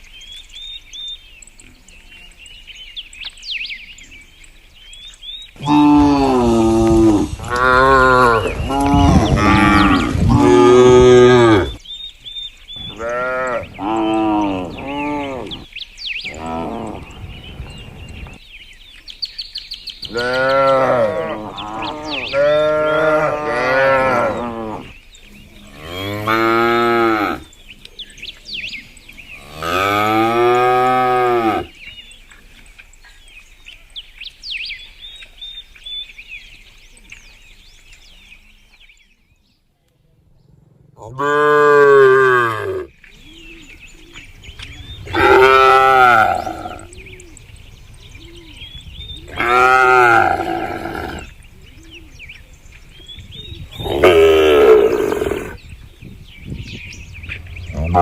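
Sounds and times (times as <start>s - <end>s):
birds chirping: 0.0s - 58.0s
cattle mooing: 5.6s - 11.8s, 40.9s - 42.9s, 45.0s - 47.0s, 49.3s - 51.3s, 57.5s - 58.0s.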